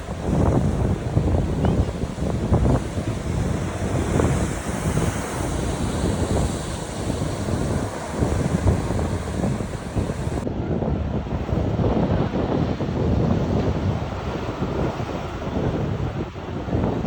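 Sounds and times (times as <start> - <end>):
sea waves on beach: 0.0 - 10.5
wind buffeting microphone: 0.0 - 17.0.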